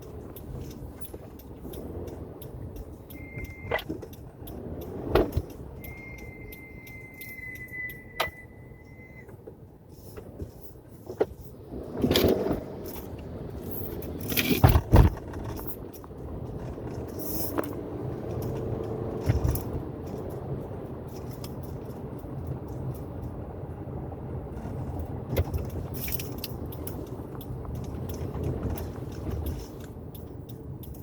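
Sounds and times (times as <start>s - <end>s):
car engine drone: 0.0s - 31.0s
high-pitched brake squeal: 5.8s - 9.2s.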